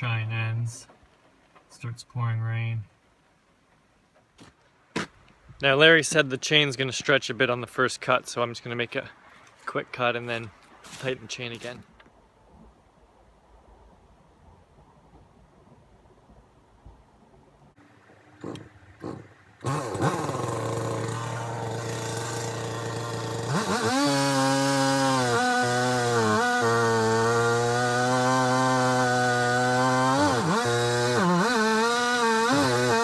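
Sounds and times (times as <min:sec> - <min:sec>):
chainsaw idling and cutting: 0:18.4 - 0:33.0
chainsaw starter cord pulls: 0:18.4 - 0:33.0.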